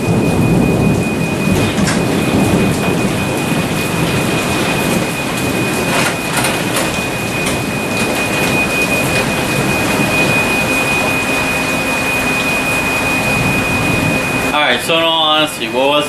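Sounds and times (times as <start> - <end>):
garage door opener running: 0.0 - 16.0
garage door rattles: 0.5 - 11.3.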